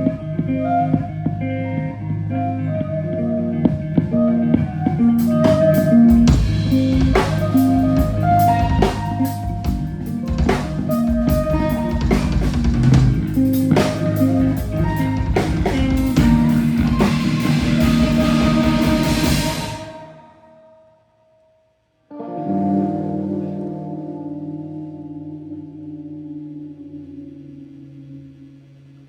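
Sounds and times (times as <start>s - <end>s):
rock band playing live: 0.0s - 20.1s
drum kit: 3.7s - 20.0s.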